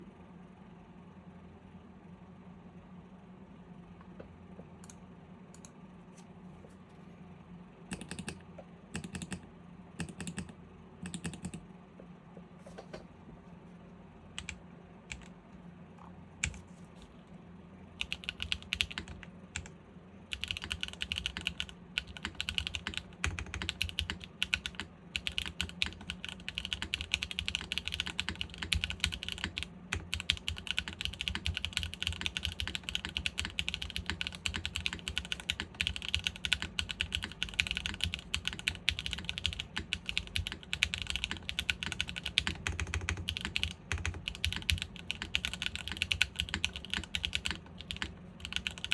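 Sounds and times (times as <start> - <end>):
mechanical keyboard typing: 7.9 - 8.4, 9.0 - 9.4, 10.0 - 11.6, 14.4 - 15.3, 18.0 - 19.7, 20.3 - 48.9.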